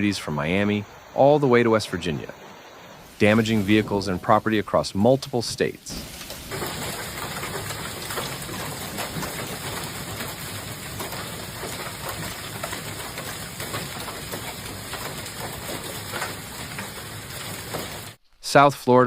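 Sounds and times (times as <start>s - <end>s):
faint high whine: 0.0s - 5.8s
rain and hail pelting: 0.0s - 18.2s.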